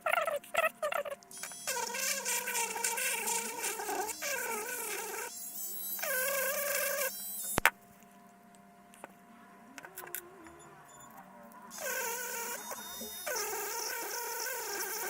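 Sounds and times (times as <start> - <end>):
rotary tool whining: 1.3 - 7.7, 10.0 - 15.0.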